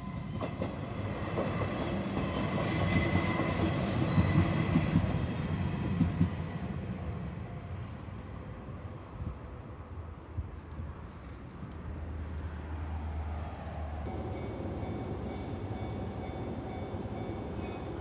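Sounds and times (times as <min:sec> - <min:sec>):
train wheels rumbling on rails: 0:00.0 - 0:07.1, 0:13.7 - 0:18.0
train wheels squealing: 0:01.4 - 0:09.2, 0:14.4 - 0:18.0.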